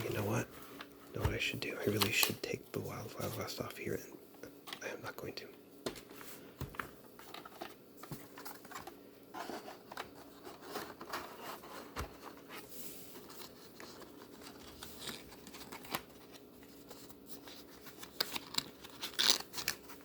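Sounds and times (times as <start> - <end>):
plastic cassettes clicking and tapping: 0.8 - 2.4.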